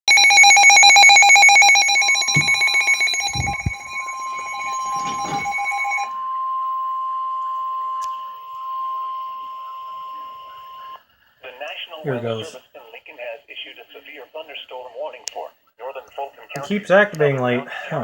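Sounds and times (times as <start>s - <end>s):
rapidly pulsing alarm beep: 0.1s - 6.9s
steady single alarm tone: 0.1s - 11.0s
dull thumps: 2.3s - 4.1s.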